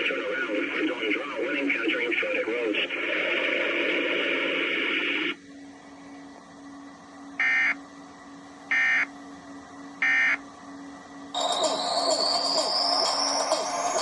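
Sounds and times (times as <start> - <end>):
broadcast audio: 0.0 - 5.4
faint steady hum: 0.0 - 14.0.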